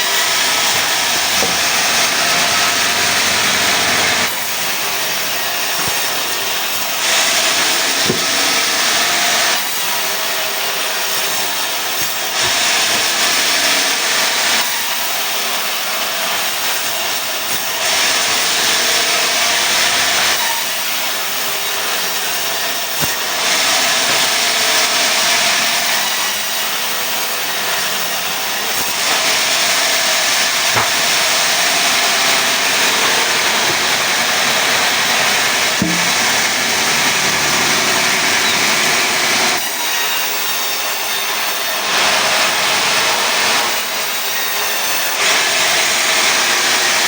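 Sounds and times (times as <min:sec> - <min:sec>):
sawmill saw cutting wood: 0:00.0 - 0:47.0.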